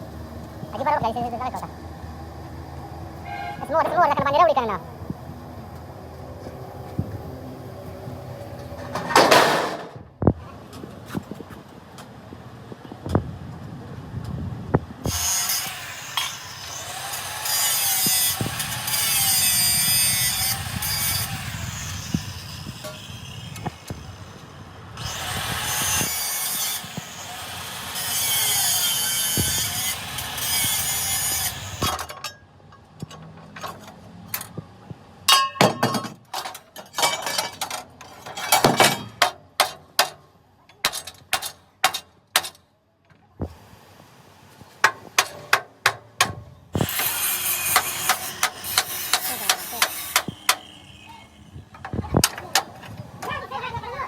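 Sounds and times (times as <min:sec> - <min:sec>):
power tool grinding metal: 0:15.0 - 0:32.1, 0:46.7 - 0:54.0.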